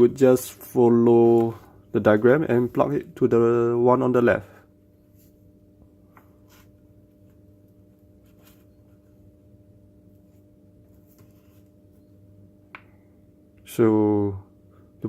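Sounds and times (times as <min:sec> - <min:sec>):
low electrical hum: 0:00.0 - 0:15.0
light scratches and soft clicks: 0:10.3 - 0:11.8.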